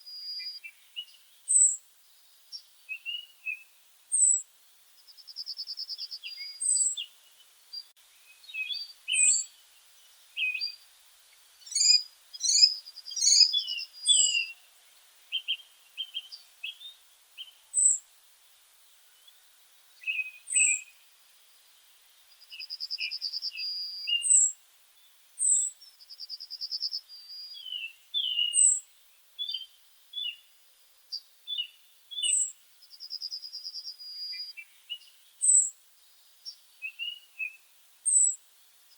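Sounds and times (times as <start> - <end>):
songbirds singing: 0.0 - 38.9
fast bird trill: 11.7 - 14.5.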